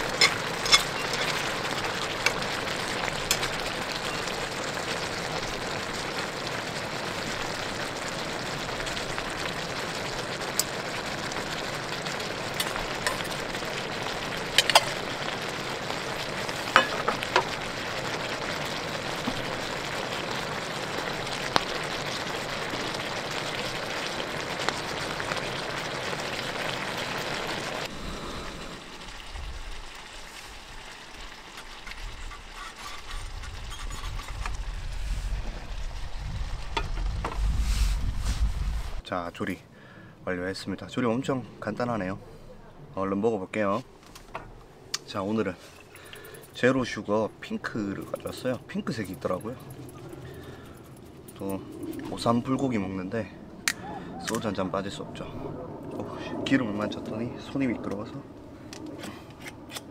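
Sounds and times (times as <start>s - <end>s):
food sizzling in a pan: 0.0s - 39.0s
wind rumble on microphone: 33.1s - 39.0s.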